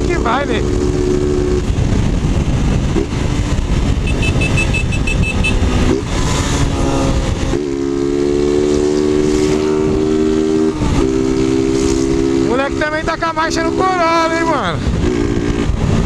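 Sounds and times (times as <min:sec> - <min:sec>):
motorcycles with loud exhausts: 0:00.0 - 0:16.0
riding rumble: 0:00.0 - 0:16.0
short high beeps: 0:04.1 - 0:05.6.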